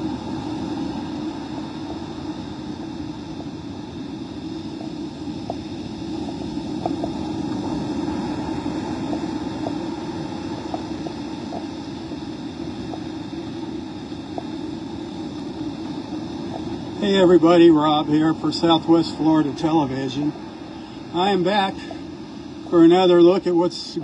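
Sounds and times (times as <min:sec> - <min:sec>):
surf on a beach: 0:00.0 - 0:24.0
wind: 0:00.0 - 0:24.0
wind buffeting microphone: 0:00.0 - 0:24.0
faint ticks: 0:03.3 - 0:03.7, 0:04.7 - 0:16.9.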